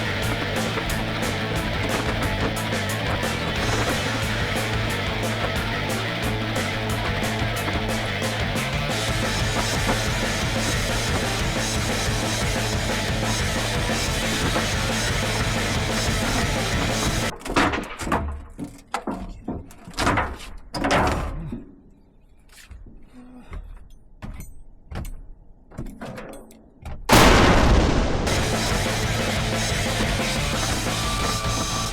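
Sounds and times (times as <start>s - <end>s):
knocks and rustles: 0.0s - 13.2s, 14.0s - 21.4s, 23.6s - 27.1s
rock music with steady beat: 0.0s - 17.3s, 28.3s - 31.9s
loud sudden burst: 27.1s - 31.9s.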